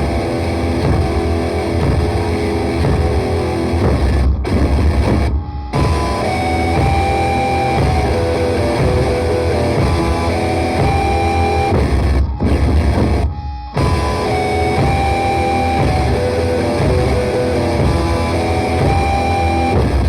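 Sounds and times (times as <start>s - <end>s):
bass guitar: 0.0s - 20.0s
distorted electric guitar: 0.0s - 20.0s
drums: 0.0s - 20.0s
grindcore band playing: 0.0s - 20.0s
ringing guitar tones: 0.0s - 20.0s.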